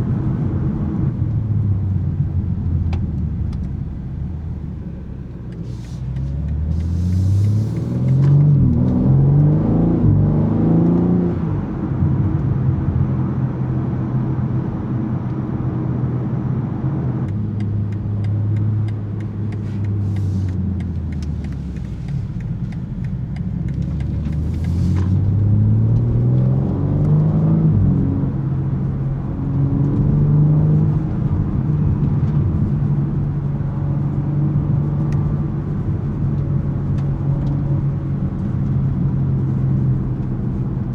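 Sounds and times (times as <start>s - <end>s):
car engine accelerating: 0.0s - 40.9s.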